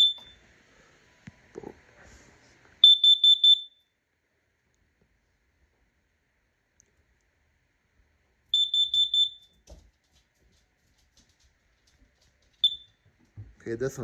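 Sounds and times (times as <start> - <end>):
high-pitched alarm beeps: 0.0 - 0.4, 2.8 - 3.8, 8.6 - 9.5.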